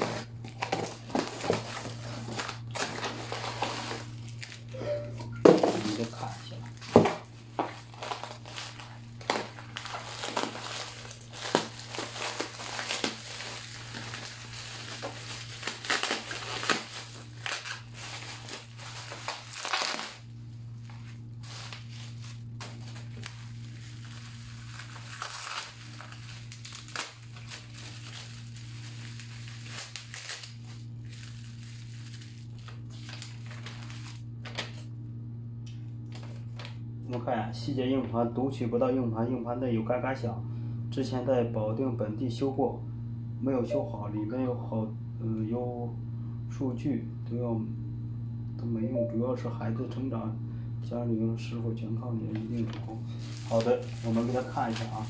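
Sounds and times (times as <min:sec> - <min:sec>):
plastic packaging crinkling: 0:00.0 - 0:04.8, 0:05.4 - 0:34.8, 0:52.3 - 0:55.0
steady low hum: 0:00.0 - 0:55.0.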